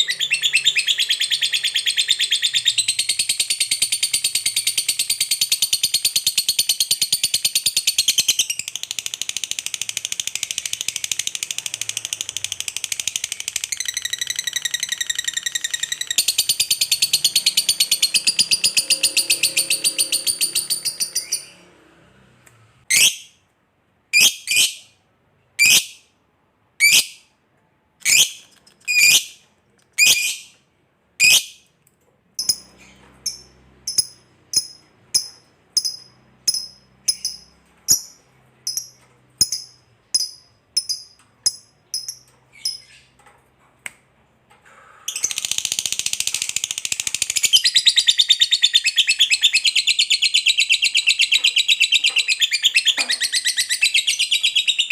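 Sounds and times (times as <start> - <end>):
lovebird calling and trilling: 0.0 - 21.6, 22.9 - 23.3, 24.1 - 24.9, 25.6 - 26.0, 26.8 - 27.2, 28.0 - 29.4, 30.0 - 30.6, 31.2 - 31.6, 32.4 - 43.2, 45.1 - 54.9.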